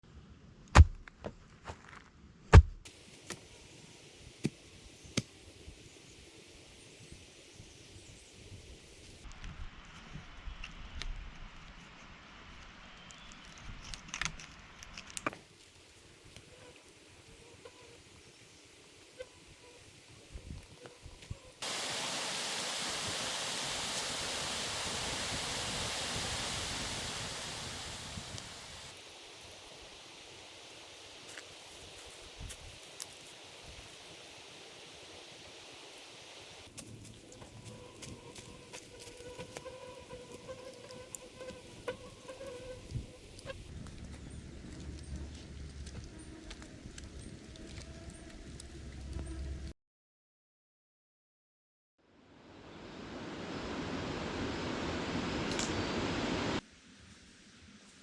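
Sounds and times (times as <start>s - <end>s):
sharp chopping strikes: 0.7s - 1.0s, 2.5s - 3.4s
steady high hiss: 21.6s - 36.7s.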